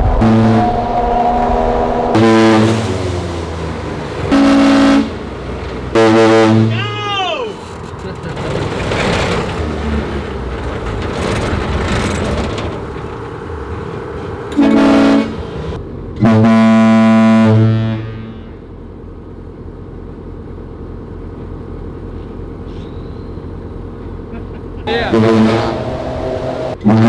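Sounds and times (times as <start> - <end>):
air horn blasts: 0.0 - 7.3, 14.6 - 18.7, 24.9 - 27.0
vehicle driving: 0.0 - 16.5, 17.3 - 27.0.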